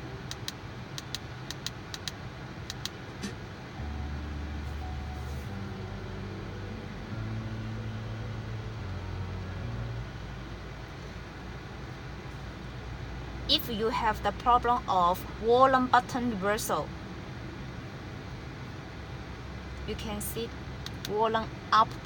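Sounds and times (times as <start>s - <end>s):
steering wheel buttons clicking: 0.3s - 3.3s
low hum shifting pitch: 3.6s - 13.5s.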